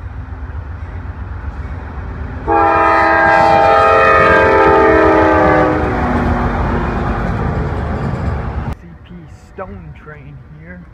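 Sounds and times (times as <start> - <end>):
passing train rumble: 0.0 - 10.9
locomotive air horn blast: 2.5 - 6.3.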